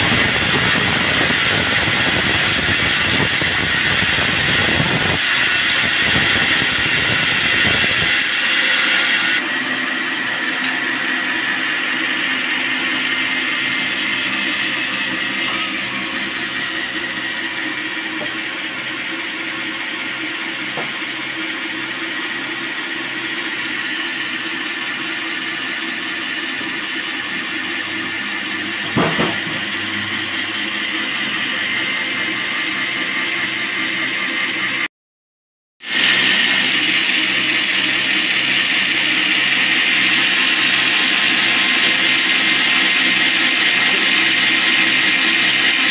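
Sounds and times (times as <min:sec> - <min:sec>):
sawmill mechanical drone and hiss: 0:00.0 - 0:34.9, 0:35.8 - 0:45.9
sharp knock: 0:28.9 - 0:29.6.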